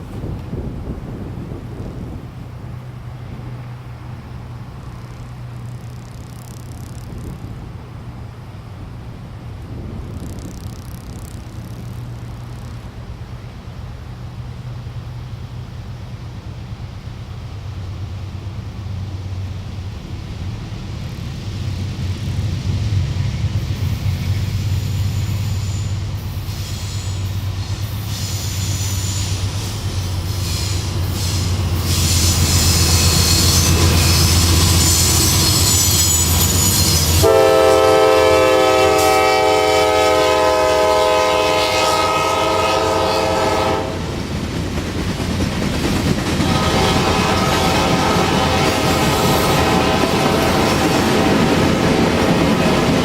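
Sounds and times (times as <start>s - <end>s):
diesel locomotive engine rumble: 0.0s - 53.0s
freight cars rattling past: 17.7s - 53.0s
locomotive air horn: 25.3s - 44.1s, 46.5s - 51.6s.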